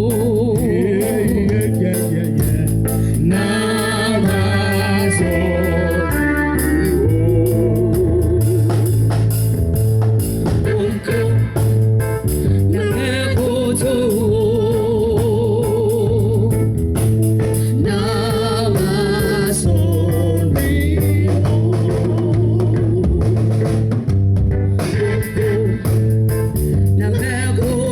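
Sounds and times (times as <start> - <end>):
person singing with vibrato: 0.0 - 9.0, 10.6 - 11.8, 12.5 - 16.7, 17.6 - 23.6, 24.8 - 26.2, 26.8 - 27.9
bass: 0.0 - 27.9
drum hits: 7.0 - 27.0.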